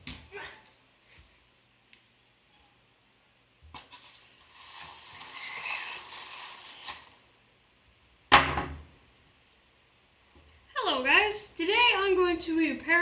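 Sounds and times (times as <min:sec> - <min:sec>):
loud knock: 0:08.3 - 0:08.9.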